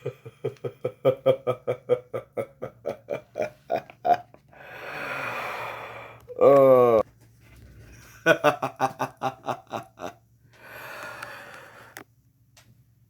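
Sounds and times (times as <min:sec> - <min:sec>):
breathy exhale: 0:04.6 - 0:06.3, 0:10.6 - 0:12.0
person grunting: 0:06.3 - 0:07.0.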